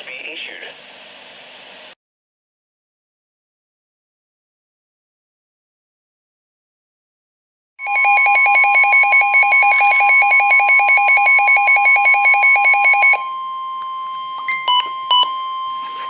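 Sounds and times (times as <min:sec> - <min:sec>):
rapidly pulsing electronic alarm: 0:07.8 - 0:16.0
steady alarm tone: 0:07.8 - 0:16.0
short beeps: 0:08.2 - 0:16.0.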